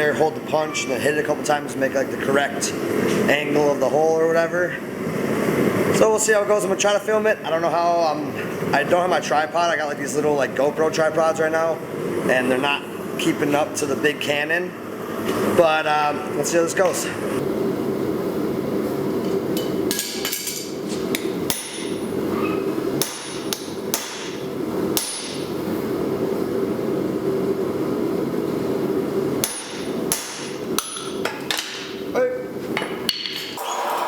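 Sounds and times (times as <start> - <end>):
hammer striking metal punch: 21.2 - 22.0, 23.0 - 24.4, 25.0 - 25.5, 29.4 - 31.9.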